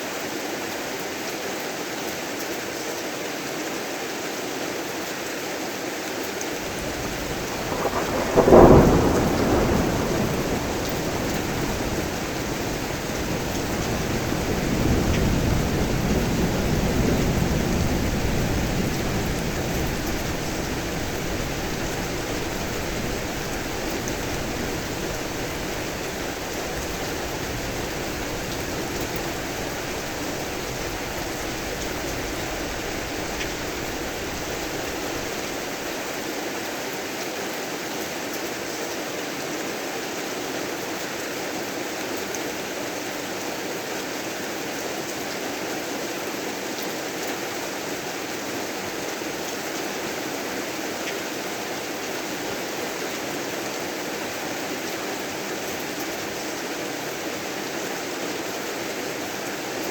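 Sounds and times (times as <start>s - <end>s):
heavy rain: 5.9s - 59.9s
sharp thunderclap: 6.6s - 35.9s
low roll of thunder: 6.6s - 36.0s.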